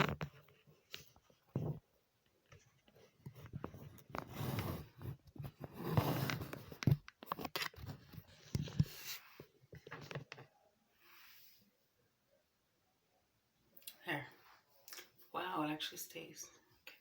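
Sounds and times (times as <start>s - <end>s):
hands rustling and scraping wig: 0.0s - 10.6s.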